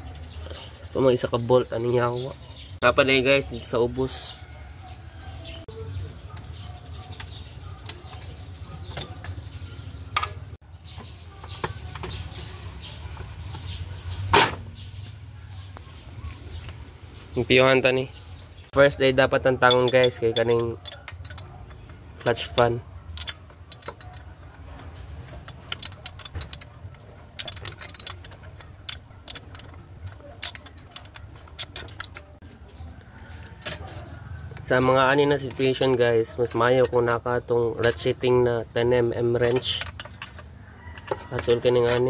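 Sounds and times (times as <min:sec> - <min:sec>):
hand tools clicking on bolts: 0:19.4 - 0:32.4, 0:39.2 - 0:42.0.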